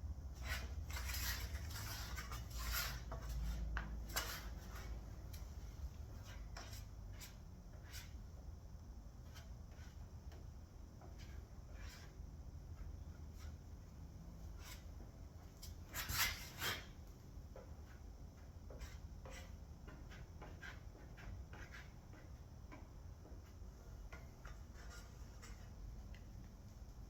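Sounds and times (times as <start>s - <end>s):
spatula scraping filler on metal: 0.4s - 5.5s, 6.1s - 8.3s, 11.1s - 12.2s, 15.6s - 17.0s, 18.7s - 22.4s, 24.0s - 25.8s.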